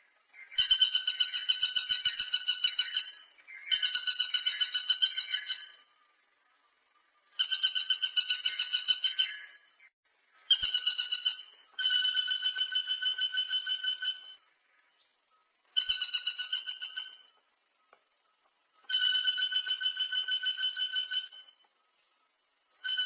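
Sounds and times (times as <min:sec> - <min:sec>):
woodpecker rattling call: 0:00.2 - 0:06.6, 0:07.3 - 0:21.9, 0:22.8 - 0:23.0.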